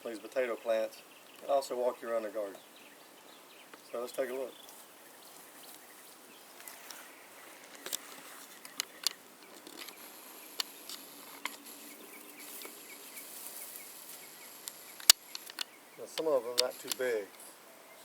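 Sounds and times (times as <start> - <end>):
high insect trill: 8.7 - 17.3
sharp clicks and knocks: 14.6 - 17.1.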